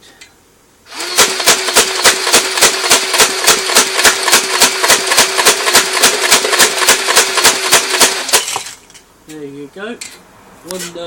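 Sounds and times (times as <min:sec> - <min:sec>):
electric motor humming: 0:00.9 - 0:08.4
toy blaster rapid clacks: 0:00.9 - 0:08.7.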